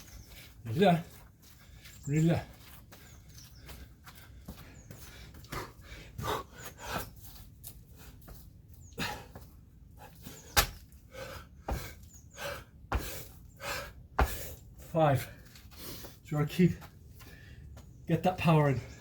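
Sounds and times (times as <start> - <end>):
man breathing hard: 2.9 - 16.2, 17.1 - 17.8.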